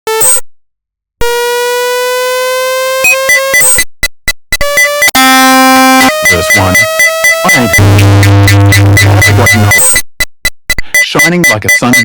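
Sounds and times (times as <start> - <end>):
synthesizer music: 1.2 - 3.8, 4.6 - 10.0.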